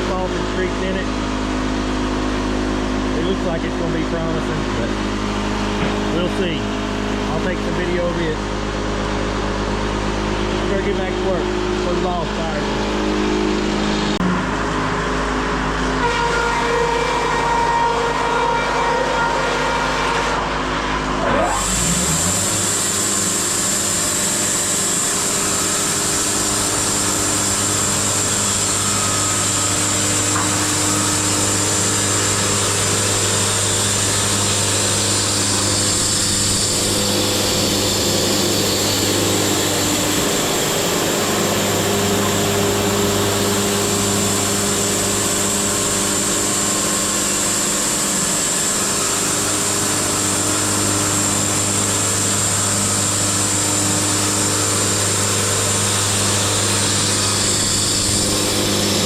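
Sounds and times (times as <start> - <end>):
sawmill engine hum: 0.0 - 59.0
band saw blade whining: 15.9 - 59.0.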